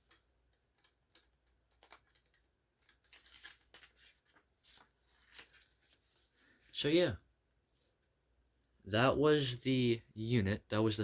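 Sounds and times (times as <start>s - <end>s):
paper rustling: 0.0s - 6.9s, 7.5s - 8.2s.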